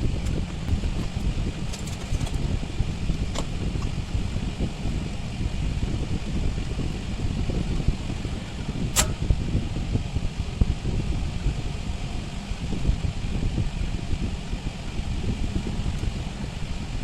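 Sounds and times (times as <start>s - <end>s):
low rumbling noise: 0.0s - 17.0s
sharp click: 8.9s - 9.3s.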